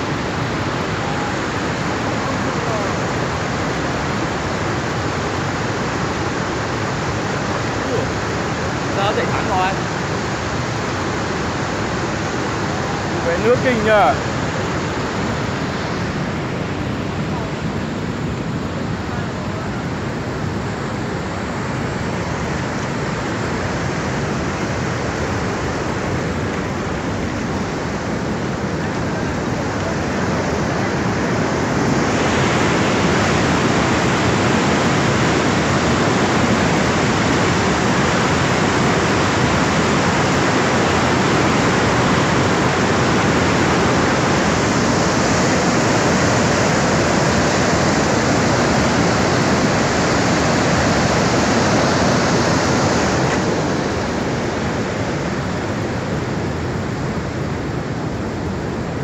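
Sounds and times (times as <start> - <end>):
floodwater rushing: 0.0 - 59.0.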